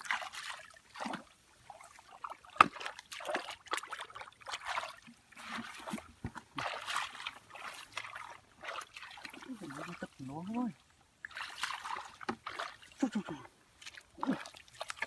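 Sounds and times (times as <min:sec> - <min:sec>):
muddy water splashing and trickling: 0:00.0 - 0:15.0
sharp slaps on water: 0:02.5 - 0:03.8.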